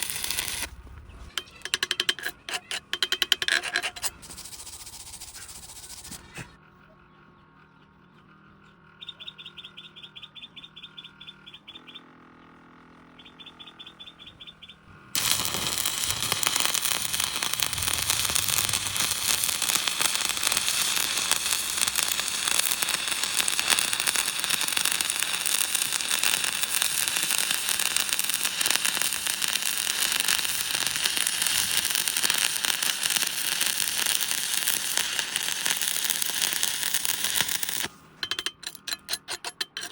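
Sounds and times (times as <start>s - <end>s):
welding arc crackling: 0.0s - 0.8s, 1.4s - 6.2s, 15.1s - 39.9s
rapid high-pitched clicking: 15.2s - 39.9s.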